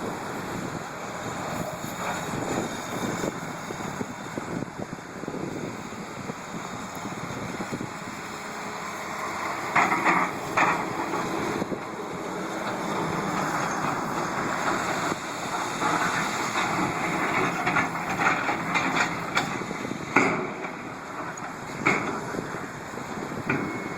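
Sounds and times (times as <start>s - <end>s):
heavy construction machinery running: 0.0s - 23.9s
sharp metallic clanks and knocks: 17.3s - 20.8s, 21.4s - 22.2s, 23.5s - 23.9s.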